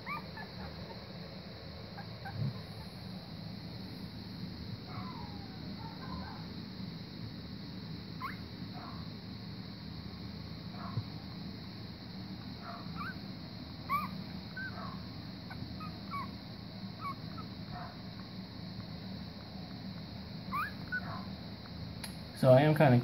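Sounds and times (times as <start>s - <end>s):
puppies squeaking and whimpering: 0.0s - 1.0s, 8.2s - 8.4s, 13.0s - 13.2s, 13.9s - 14.7s, 15.5s - 16.3s, 17.0s - 17.5s, 20.5s - 21.1s
steady low hum: 0.0s - 23.0s.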